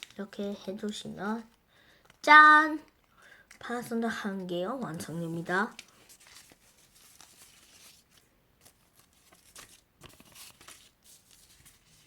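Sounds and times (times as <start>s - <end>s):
paper rustling and crinkling: 0.0s - 1.1s, 4.8s - 12.0s.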